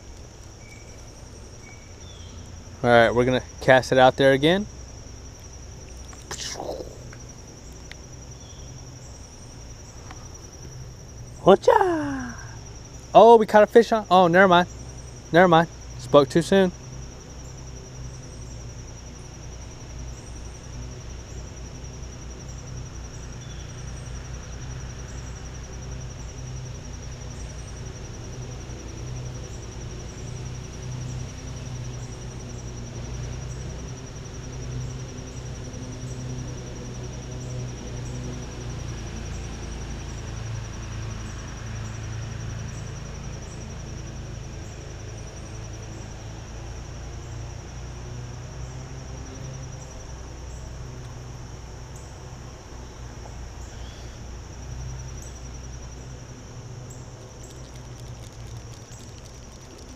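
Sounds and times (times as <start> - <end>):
insects trilling: 0.0 - 59.9.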